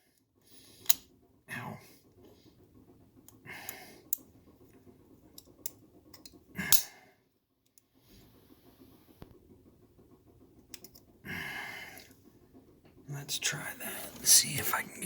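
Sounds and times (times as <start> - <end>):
metal parts and tools clicking: 5.4 - 6.9.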